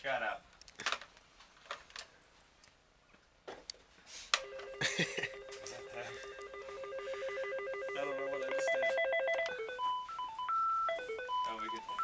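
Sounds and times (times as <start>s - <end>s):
telephone ringing: 4.4s - 12.0s.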